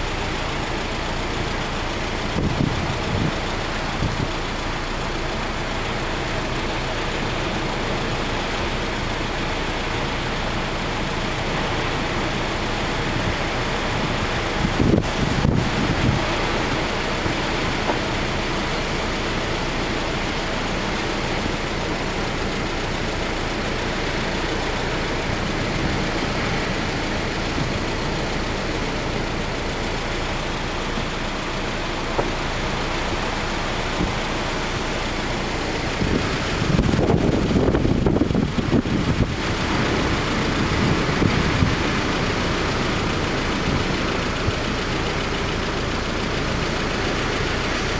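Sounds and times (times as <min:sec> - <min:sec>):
surf: 0:00.0 - 0:47.9
strong wind: 0:02.2 - 0:04.5, 0:12.7 - 0:19.1, 0:32.5 - 0:45.2
wind gusts buffeting microphone: 0:13.3 - 0:18.6, 0:33.1 - 0:44.9.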